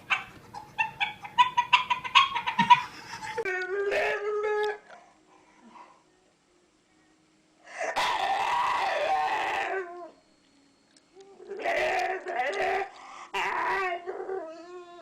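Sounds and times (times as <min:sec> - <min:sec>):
animal harsh cry: 0:07.8 - 0:10.0, 0:11.4 - 0:14.3.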